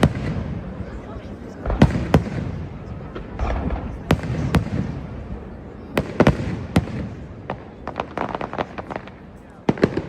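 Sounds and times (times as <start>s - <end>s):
fireworks exploding: 0.0s - 10.0s.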